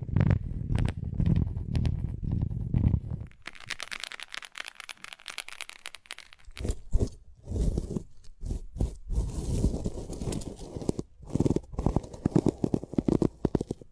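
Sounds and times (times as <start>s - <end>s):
bean pod husk crackling and tearing: 9.5s - 13.9s.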